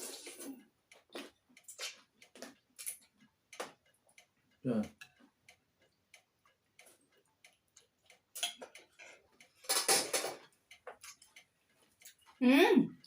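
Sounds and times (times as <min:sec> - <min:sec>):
mouth and chewing clicks: 0:00.2 - 0:09.6.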